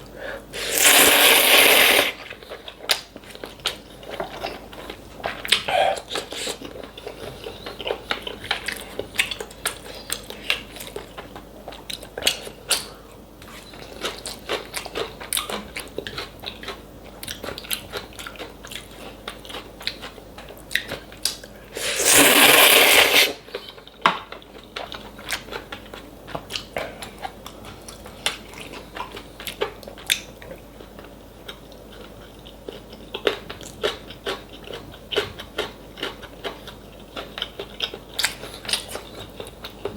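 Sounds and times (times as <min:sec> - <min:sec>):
loud slurp: 0:00.6 - 0:02.2, 0:21.8 - 0:23.4
chewing and crunching food: 0:00.8 - 0:39.9.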